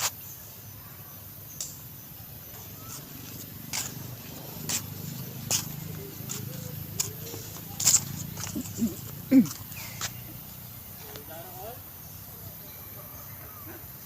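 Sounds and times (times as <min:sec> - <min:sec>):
monkeys squeaky calls: 0:02.6 - 0:11.1.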